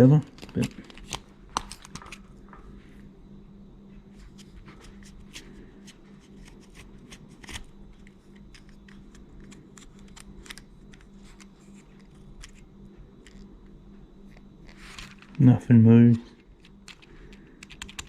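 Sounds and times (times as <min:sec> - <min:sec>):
low steady hum: 0:00.0 - 0:18.0
plastic parts clicking and rattling: 0:16.4 - 0:18.0.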